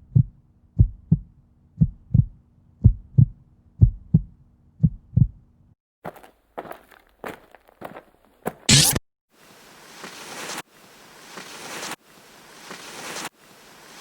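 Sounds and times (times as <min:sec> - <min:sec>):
heartbeat thumps: 0:00.0 - 0:05.5.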